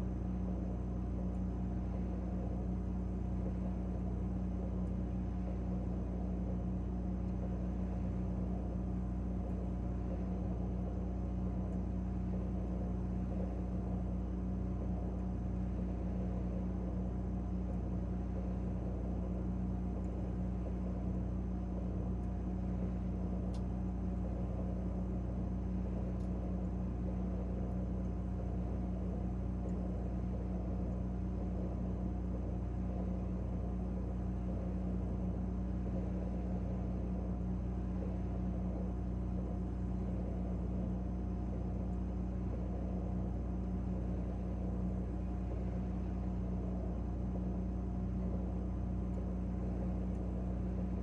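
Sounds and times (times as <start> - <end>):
refrigerator humming: 0.0 - 51.0
faint ticks: 14.8 - 36.0.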